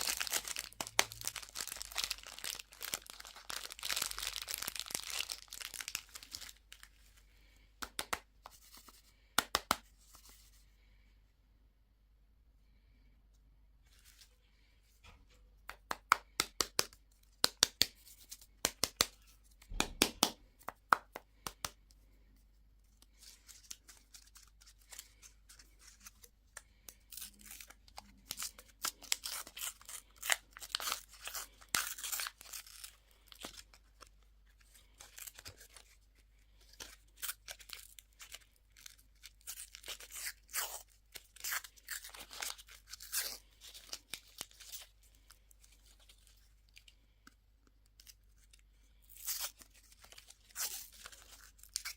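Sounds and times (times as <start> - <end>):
wrappers tearing and rustling: 0.0 - 6.9.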